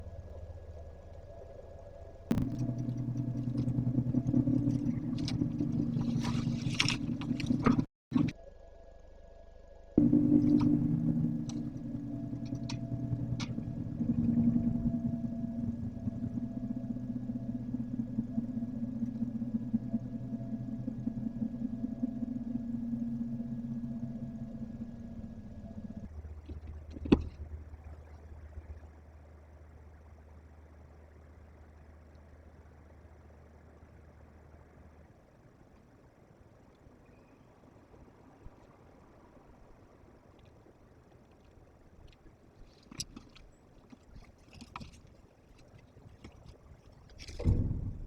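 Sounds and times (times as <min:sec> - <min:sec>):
engine idling: 0:00.0 - 0:08.4, 0:09.0 - 0:35.2, 0:47.2 - 0:48.0
steady low hum: 0:00.0 - 0:48.0
scraping and scratching: 0:02.3 - 0:08.3.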